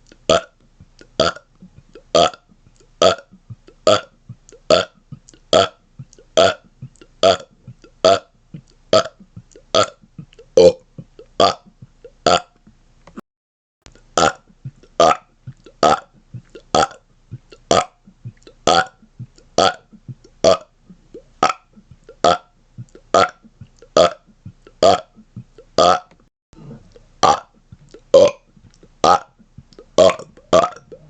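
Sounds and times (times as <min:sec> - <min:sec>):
man burping: 0:01.2 - 0:05.8, 0:06.4 - 0:12.6, 0:14.2 - 0:17.0, 0:18.7 - 0:19.0, 0:19.6 - 0:20.8, 0:21.4 - 0:25.2, 0:25.8 - 0:29.4, 0:30.0 - 0:31.0.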